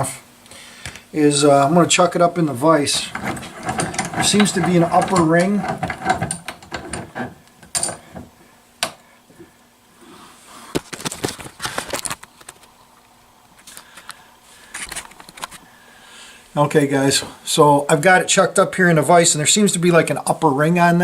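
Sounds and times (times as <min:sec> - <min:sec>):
metal tools clinking: 0:02.8 - 0:08.2.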